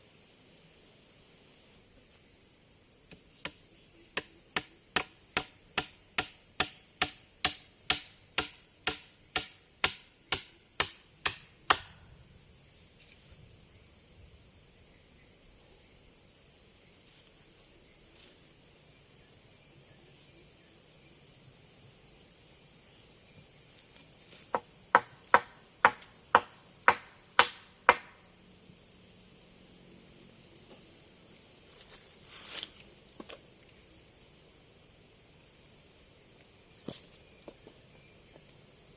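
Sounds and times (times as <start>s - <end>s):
high-pitched insect drone: 0.0s - 38.9s
chopping blows on wood: 3.1s - 3.6s, 4.2s - 12.0s, 24.5s - 28.2s.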